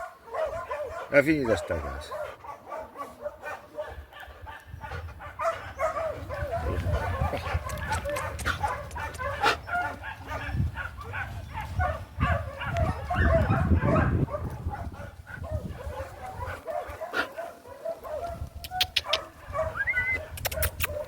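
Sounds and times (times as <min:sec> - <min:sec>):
dog barking and yipping: 0:00.0 - 0:21.0.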